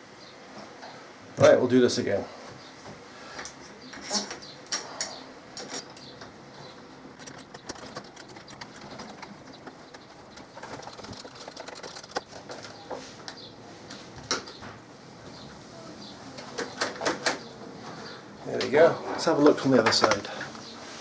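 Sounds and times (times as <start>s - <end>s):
bird cooing: 6.6s - 13.0s.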